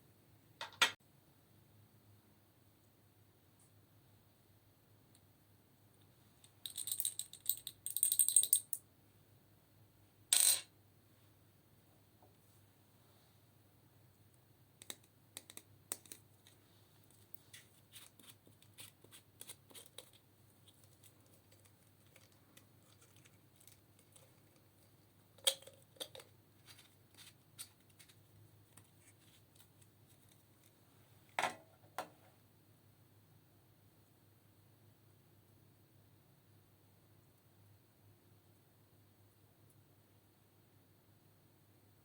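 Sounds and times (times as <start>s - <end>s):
small clicks and scrapes of makeup: 14.8s - 30.8s.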